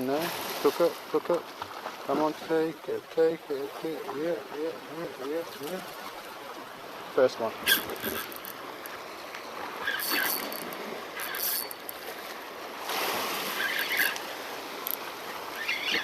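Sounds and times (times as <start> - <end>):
sea water splashing on rocks: 7.4 - 16.0.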